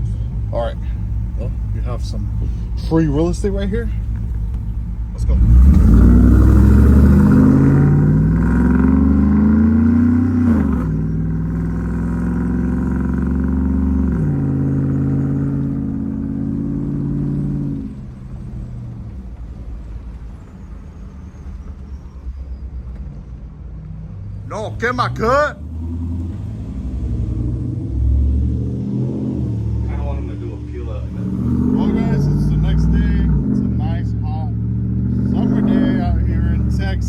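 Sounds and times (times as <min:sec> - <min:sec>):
pickup truck engine accelerating: 0:00.0 - 0:23.4, 0:24.1 - 0:37.0.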